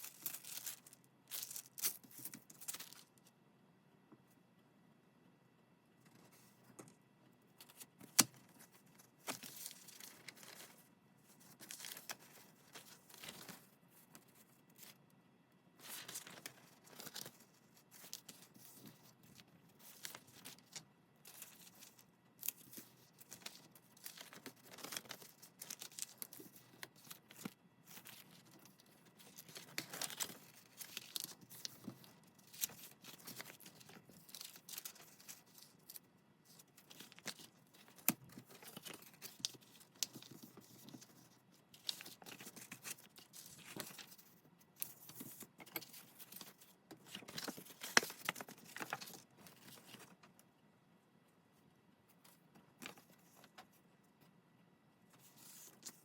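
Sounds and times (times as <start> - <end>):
paper ripping and rustling: 15.8 - 50.1.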